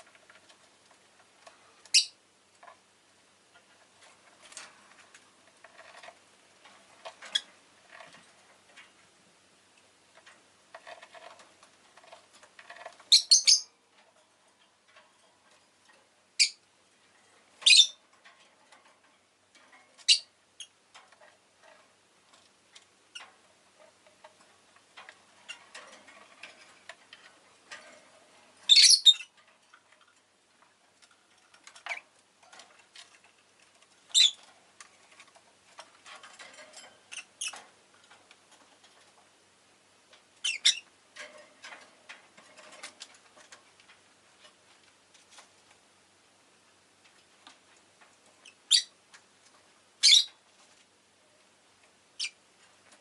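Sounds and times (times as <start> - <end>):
rustling: 0.0 - 53.0
bird shrill calls: 13.1 - 13.7, 28.7 - 29.2, 50.0 - 50.3.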